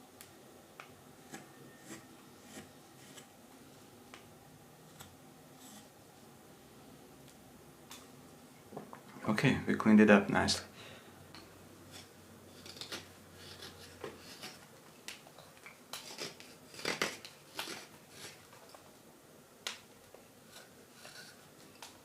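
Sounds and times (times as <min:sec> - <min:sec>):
knife carving wood: 0:01.2 - 0:03.3, 0:04.9 - 0:06.0, 0:11.9 - 0:14.6, 0:15.9 - 0:18.5, 0:20.4 - 0:21.9.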